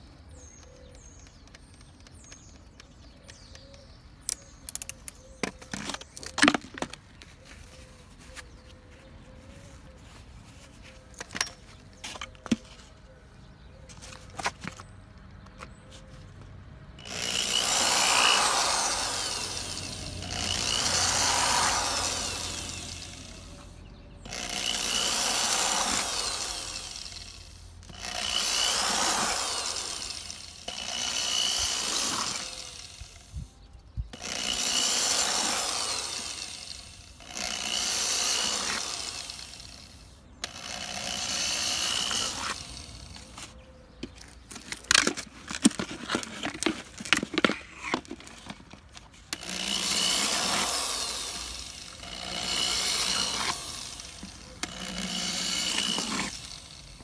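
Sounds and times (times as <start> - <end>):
tool cutting gourd shell: 40.4 - 57.0.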